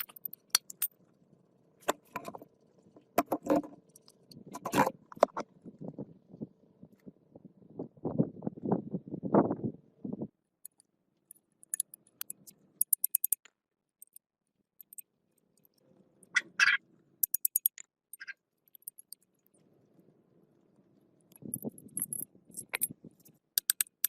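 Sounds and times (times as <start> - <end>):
light clicks and high ticks: 10.6 - 16.4, 17.2 - 19.5, 21.3 - 24.0.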